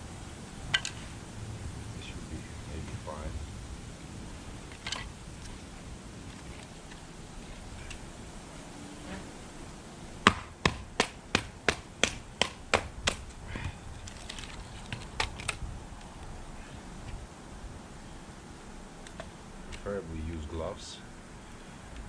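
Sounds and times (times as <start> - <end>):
hatchet chopping kindling: 10.2 - 13.8.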